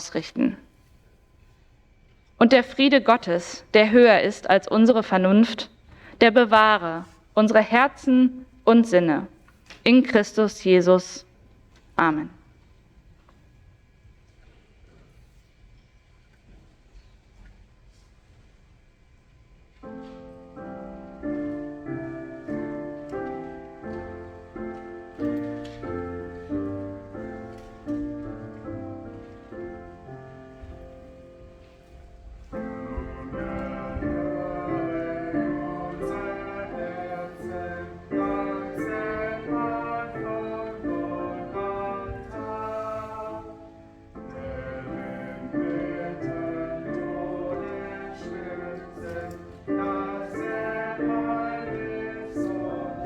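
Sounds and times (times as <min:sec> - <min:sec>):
slow calm piano piece: 0:19.6 - 0:53.0.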